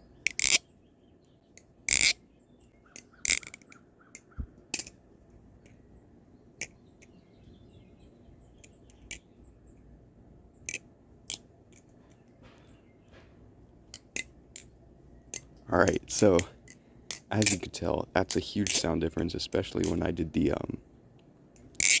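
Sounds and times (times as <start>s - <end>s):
butterfly knife clicking: 0.2s - 0.6s, 3.0s - 5.0s.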